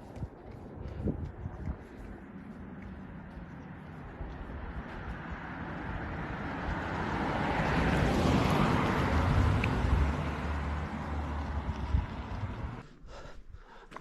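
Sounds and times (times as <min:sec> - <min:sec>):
vehicle driving past: 0:02.7 - 0:12.8.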